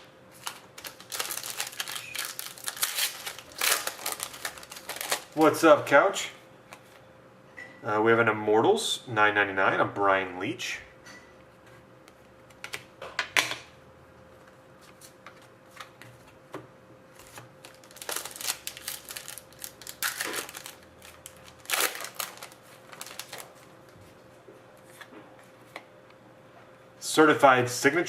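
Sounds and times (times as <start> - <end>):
cards and packaging rustling: 0.3 - 5.6, 17.2 - 24.1.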